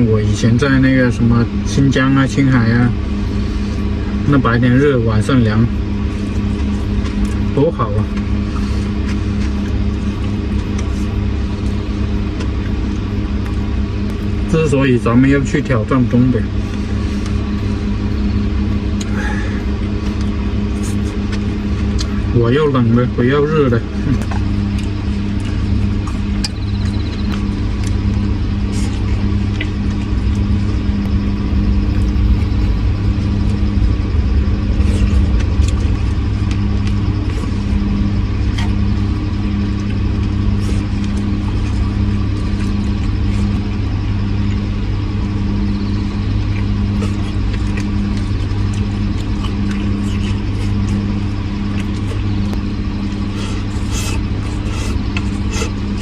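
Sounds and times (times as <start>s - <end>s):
vehicle engine humming: 0.0s - 56.0s.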